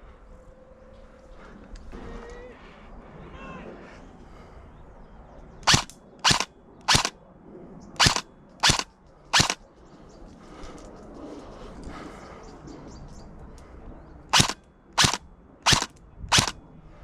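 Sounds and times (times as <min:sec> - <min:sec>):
airsoft gun shots: 0:05.6 - 0:07.1, 0:08.0 - 0:09.6, 0:14.3 - 0:16.6.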